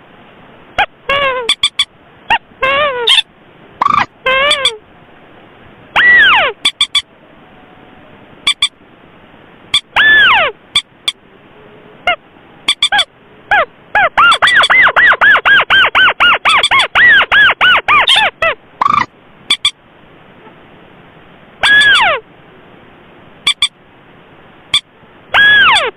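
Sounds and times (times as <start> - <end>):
bird calls slurring downward: 0.8 - 4.8, 5.9 - 7.1, 9.7 - 11.2, 12.0 - 19.8, 21.6 - 22.2, 23.5 - 23.8, 24.7 - 25.9
fast run of short arched bird notes: 18.8 - 19.8, 21.6 - 22.1.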